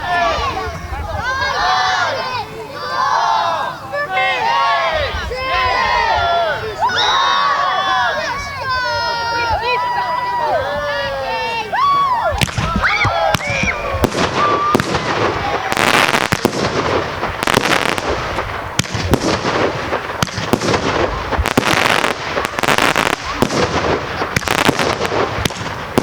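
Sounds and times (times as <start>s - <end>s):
firework whistle: 12.4s - 26.0s
fireworks bangs and crackling: 12.4s - 26.0s
hissing crackle: 13.5s - 26.0s.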